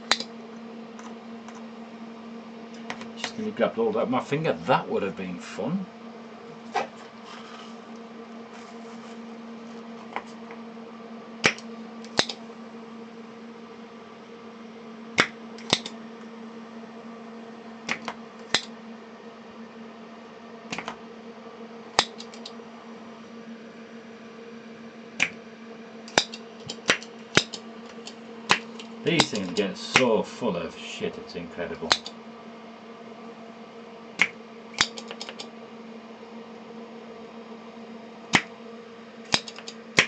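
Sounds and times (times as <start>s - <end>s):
tools clicking on circuit board: 0.0s - 0.3s, 11.4s - 12.4s, 15.2s - 16.0s, 22.0s - 22.5s, 26.1s - 30.1s, 31.9s - 32.1s, 34.2s - 35.5s, 39.3s - 40.0s
steady electrical hum: 0.0s - 40.0s.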